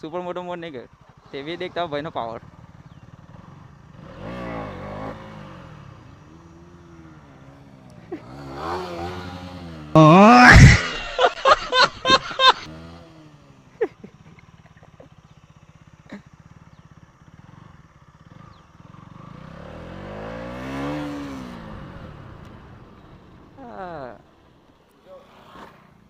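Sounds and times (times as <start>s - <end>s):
motorcycle engine revving: 0.9s - 10.0s, 12.2s - 24.6s
passing vehicle engine: 17.5s - 23.6s.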